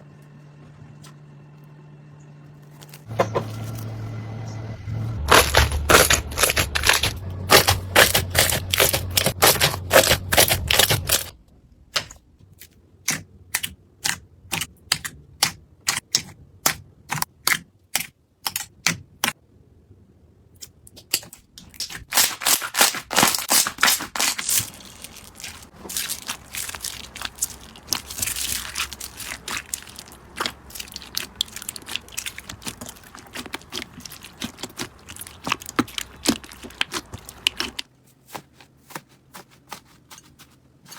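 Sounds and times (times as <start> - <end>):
slime crackling and popping: 5.3 - 11.3, 21.1 - 37.8.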